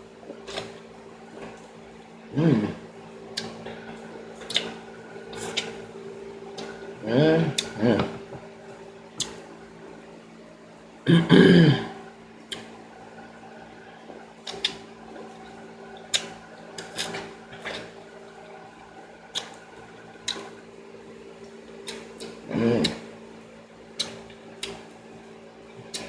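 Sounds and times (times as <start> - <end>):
faint steady hum: 0.0 - 26.0
person humming mmm: 2.3 - 2.9, 7.0 - 8.4, 22.4 - 23.0
wet chewing and mouth smacks: 4.4 - 5.8, 9.2 - 9.4, 14.4 - 14.8, 19.3 - 20.6, 21.8 - 23.0, 24.0 - 24.8.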